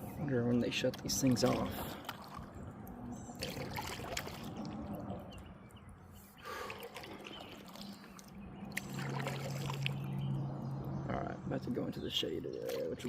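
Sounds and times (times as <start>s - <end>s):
water dripping off paddle: 0.9s - 11.0s
paddle strokes through water: 1.1s - 10.5s.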